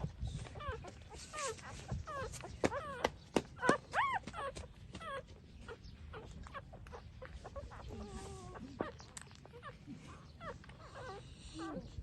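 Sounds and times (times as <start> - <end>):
puppies whimpering: 0.0 - 12.0
puppy whining: 0.0 - 12.0.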